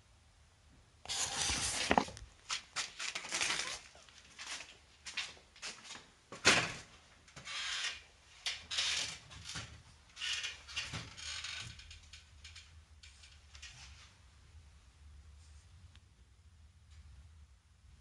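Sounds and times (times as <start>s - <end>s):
rubbing and brushing noises: 1.1s - 4.8s.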